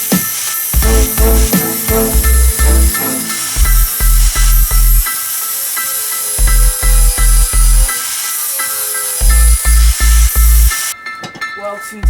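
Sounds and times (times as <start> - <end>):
electronic music with pulsing bass: 0.8 - 5.1, 9.2 - 10.8.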